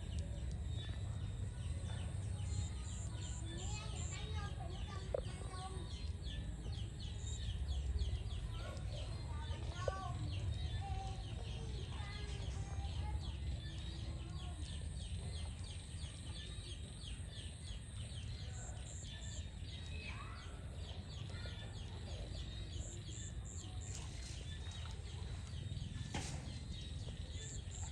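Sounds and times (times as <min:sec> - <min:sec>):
caterpillar chewing a leaf: 0:00.0 - 0:18.4
bird chirps: 0:00.0 - 0:27.9.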